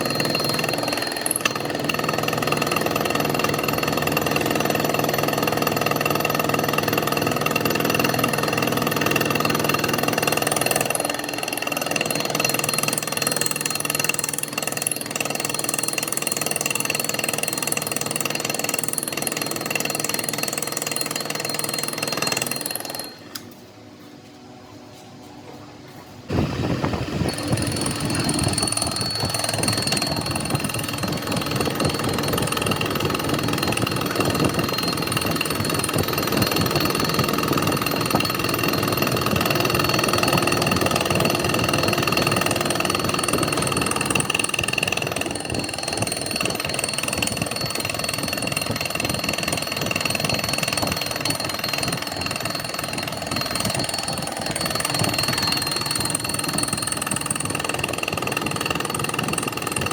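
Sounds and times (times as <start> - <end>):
metalworking machine rattling: 0.0 - 23.6, 26.3 - 59.9
high machine whine: 26.3 - 58.6.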